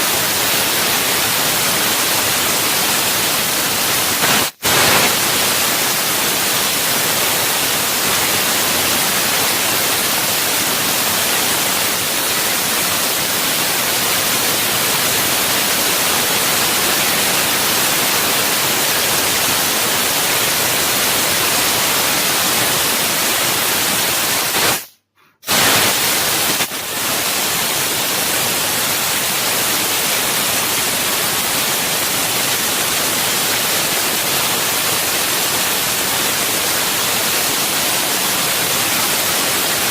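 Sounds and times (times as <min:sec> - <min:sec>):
laser cutter gas jet hissing: 0:03.9 - 0:12.8, 0:23.6 - 0:27.7.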